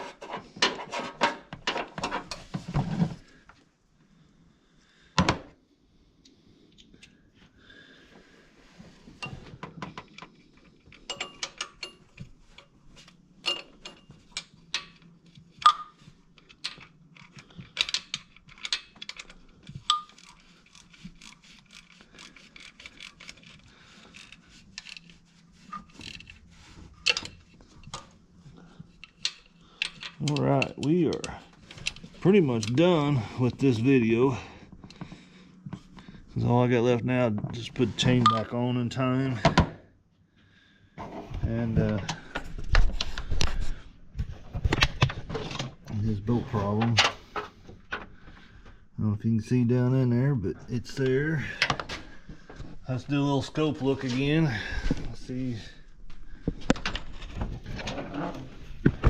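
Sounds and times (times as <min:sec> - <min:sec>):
metal tools clinking: 0:11.0 - 0:12.7, 0:13.4 - 0:21.4, 0:27.0 - 0:28.0.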